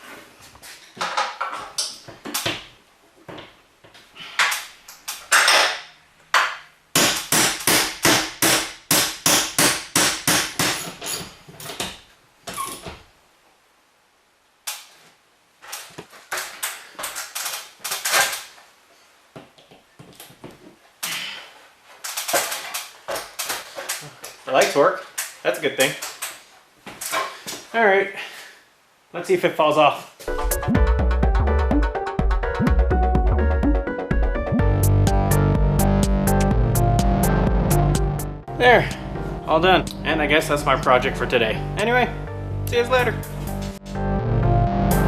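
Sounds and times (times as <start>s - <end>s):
hand tools clicking and knocking on metal: 3.3s - 12.0s.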